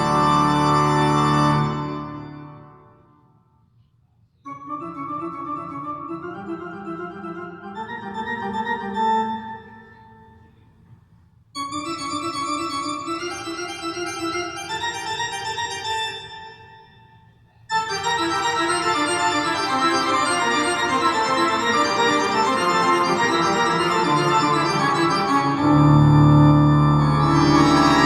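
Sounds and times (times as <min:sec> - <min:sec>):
keyboard music playback: 0:17.7 - 0:28.0.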